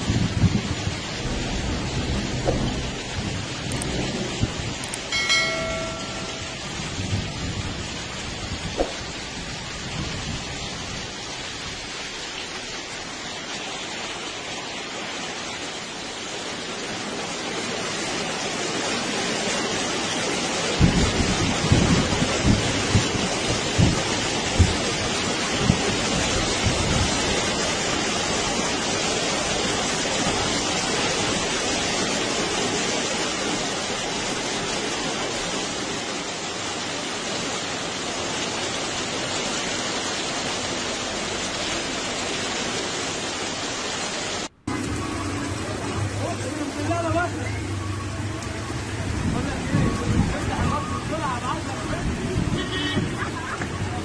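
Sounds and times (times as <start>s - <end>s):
heavy rain falling: 0.0s - 54.0s
short low thumps: 1.0s - 4.7s, 8.7s - 9.4s.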